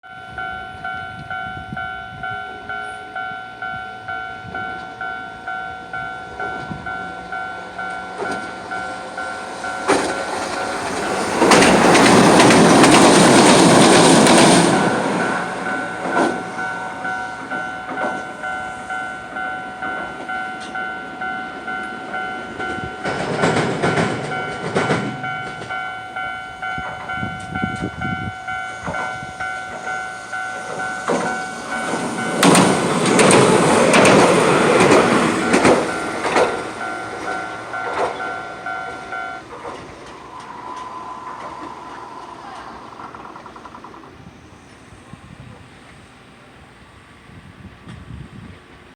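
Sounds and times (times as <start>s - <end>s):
level-crossing warning bell: 0.0s - 43.3s
tram wheels rushing on rail: 0.2s - 48.9s
wheels clicking over rail joints: 6.4s - 27.9s, 28.5s - 44.9s.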